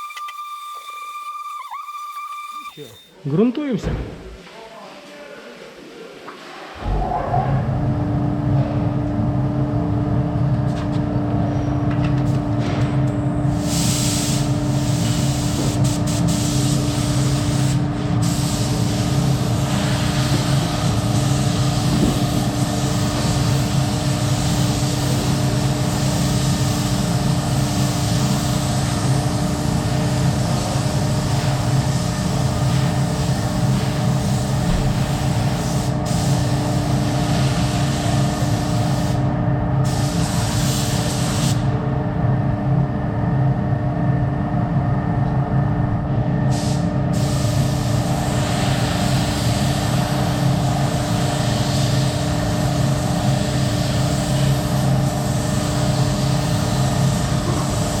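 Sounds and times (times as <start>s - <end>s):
spray gun hissing: 0.0s - 3.1s
steady machine hum: 0.0s - 3.4s.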